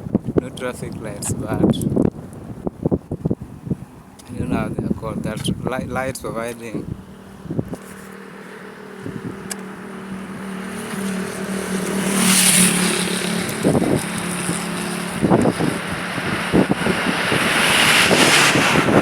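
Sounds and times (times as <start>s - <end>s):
vehicle passing by: 6.7s - 19.0s.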